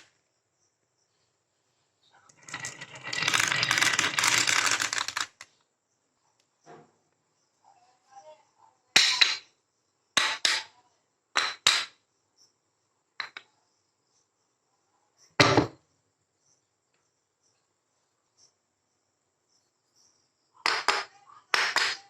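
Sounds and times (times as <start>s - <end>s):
marbles clicking on gutter: 2.3s - 5.5s.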